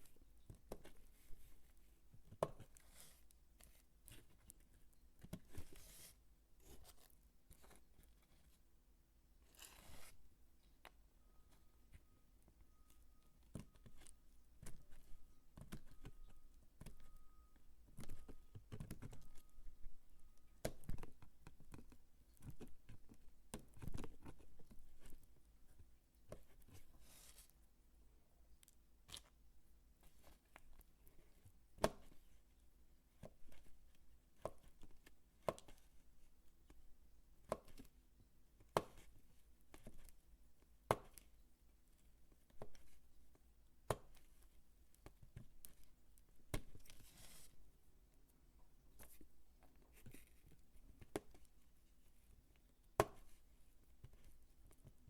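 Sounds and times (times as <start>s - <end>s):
faint short beep: 11.2s - 14.3s, 15.1s - 18.6s
bar soap being chopped: 38.6s - 39.1s, 40.8s - 41.2s, 43.8s - 44.2s, 53.0s - 53.3s.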